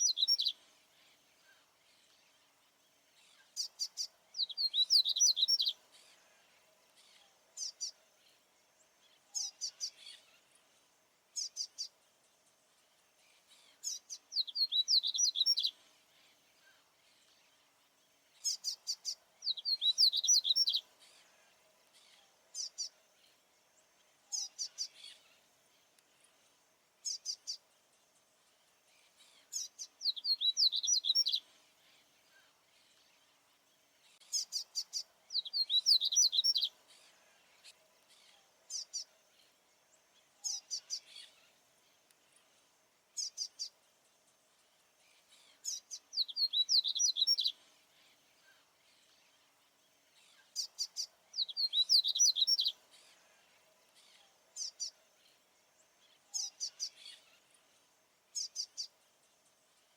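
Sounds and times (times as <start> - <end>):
seedeater bird singing: 0.0 - 0.6, 3.2 - 6.1, 13.4 - 15.8, 18.4 - 21.2, 29.3 - 31.5, 34.1 - 36.8, 45.2 - 49.2, 50.3 - 53.2, 56.0 - 57.4.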